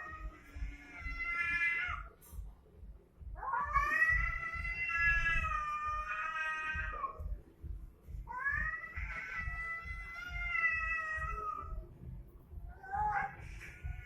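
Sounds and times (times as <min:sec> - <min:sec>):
cat yowling: 0:03.4 - 0:07.2, 0:08.3 - 0:11.8, 0:12.7 - 0:14.0.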